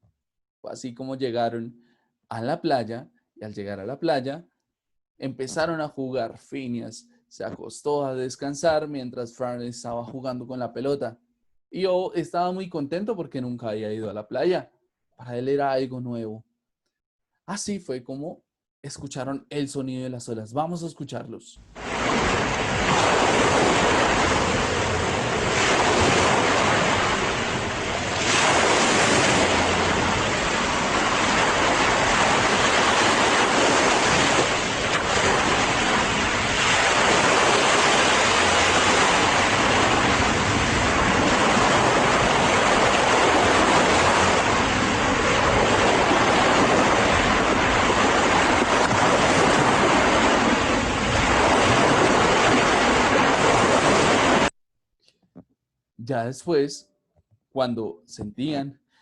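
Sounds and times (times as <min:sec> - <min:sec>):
ocean waves breaking on beach: 0:21.7 - 0:54.5.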